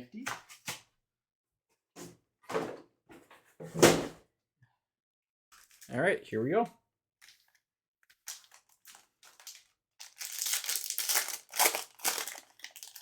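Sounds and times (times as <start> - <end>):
wrapper crinkling: 5.6 - 5.9, 8.1 - 13.0
packaging being torn open: 8.2 - 13.0.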